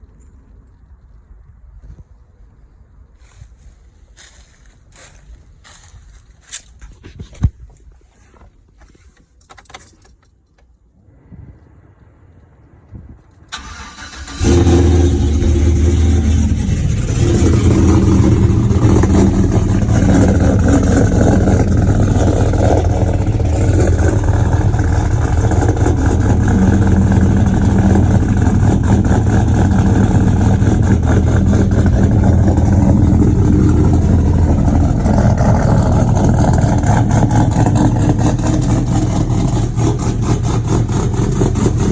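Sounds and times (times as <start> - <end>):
engine cranking and idling: 13.3 - 41.9.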